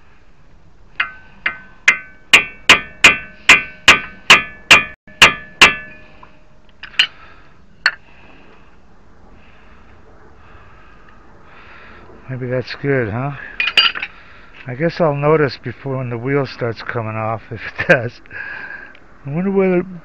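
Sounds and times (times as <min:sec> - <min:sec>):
hammer striking metal chisel: 0:01.0 - 0:06.2.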